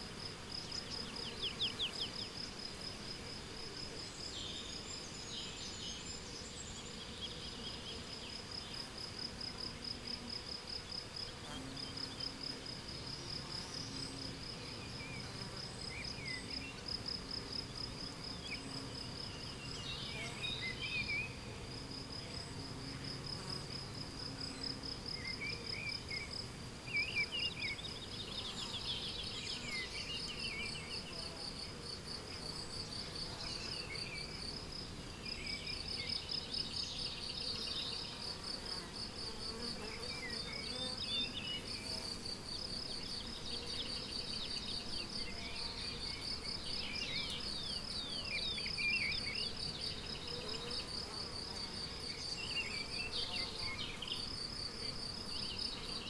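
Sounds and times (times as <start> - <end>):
crickets chirping: 11.9 - 56.0.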